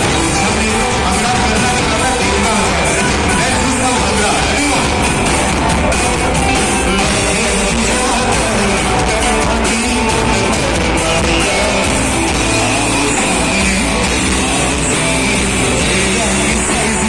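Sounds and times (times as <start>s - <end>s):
live rock band playing: 0.0s - 17.0s
person singing: 0.0s - 17.0s.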